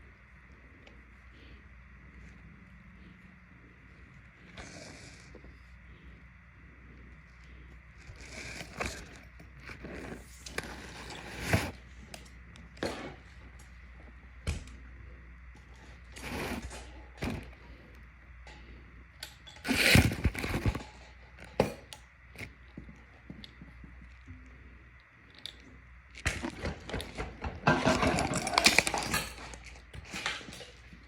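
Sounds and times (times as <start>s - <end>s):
objects clicking and scraping: 7.4s - 13.8s, 15.5s - 24.2s, 25.3s - 31.0s.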